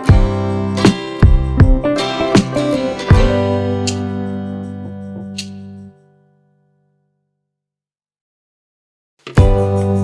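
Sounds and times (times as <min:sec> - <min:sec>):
acoustic guitar strumming: 0:00.0 - 0:06.0.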